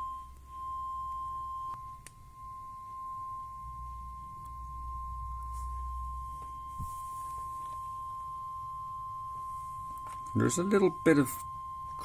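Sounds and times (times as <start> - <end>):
sine-wave test tone: 0.0 - 12.0.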